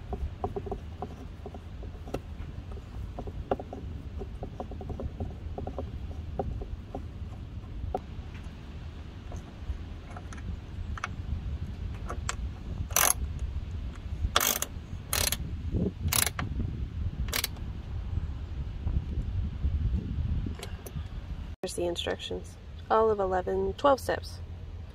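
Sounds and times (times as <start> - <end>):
socket ratchet clicking: 12.2 - 13.2, 14.4 - 15.4, 16.1 - 16.4, 17.3 - 17.6.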